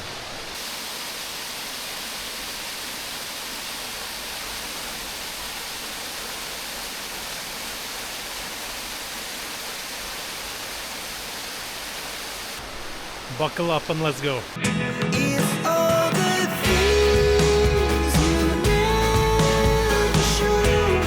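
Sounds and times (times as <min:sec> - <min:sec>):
stream rushing: 0:00.0 - 0:14.6.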